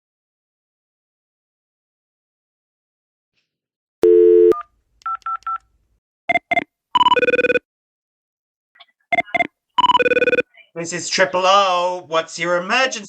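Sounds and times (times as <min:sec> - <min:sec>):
telephone ringing tone: 0:04.0 - 0:04.6, 0:06.3 - 0:07.6, 0:09.1 - 0:10.5
keypad beeps: 0:04.0 - 0:05.6, 0:06.3 - 0:07.6, 0:09.1 - 0:10.5
telephone dial tone: 0:04.0 - 0:05.6, 0:06.3 - 0:07.6, 0:09.1 - 0:10.4.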